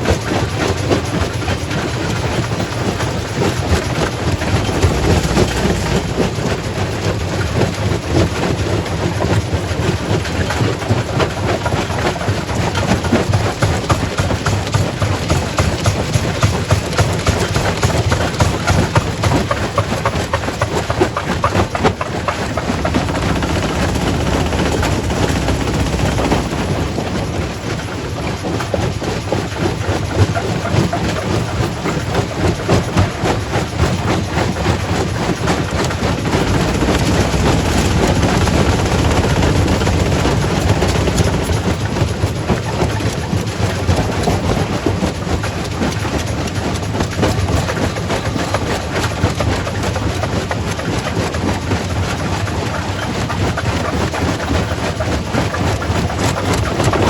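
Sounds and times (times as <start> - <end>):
rock crusher rumbling: 3.2 - 29.7, 34.7 - 44.8.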